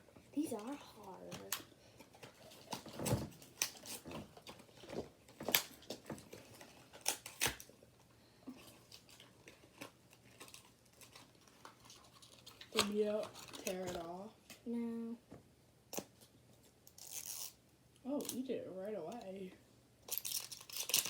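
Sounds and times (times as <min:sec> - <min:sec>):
packaging being torn and crinkled: 0:02.2 - 0:07.7, 0:08.6 - 0:14.1, 0:16.9 - 0:17.6, 0:20.0 - 0:21.0.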